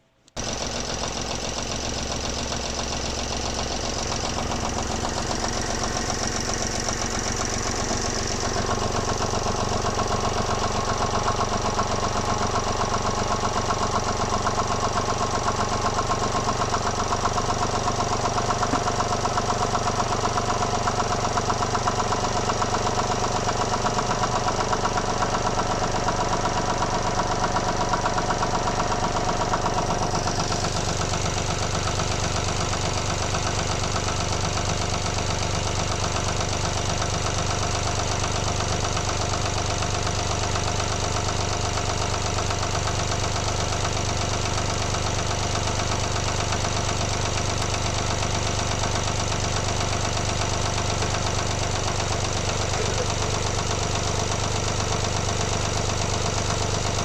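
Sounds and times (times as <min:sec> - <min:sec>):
diesel engine idling with clatter: 0:00.4 - 0:57.0.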